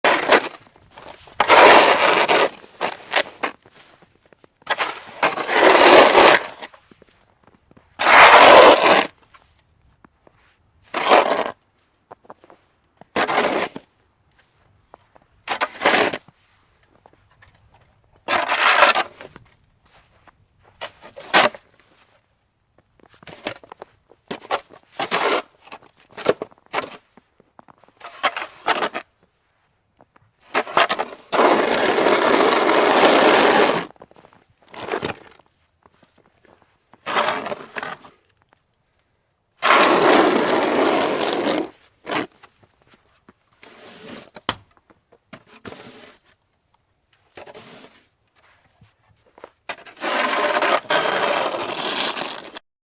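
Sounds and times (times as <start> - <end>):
shovel scraping through snow: 0.0 - 7.2, 8.0 - 9.5, 10.8 - 11.6, 12.4 - 14.5, 15.5 - 16.8, 18.3 - 19.4, 20.8 - 22.1, 24.3 - 27.0, 27.9 - 29.1, 30.4 - 36.2, 36.9 - 38.2, 39.6 - 42.6, 43.6 - 44.5, 45.4 - 46.4, 47.3 - 52.6.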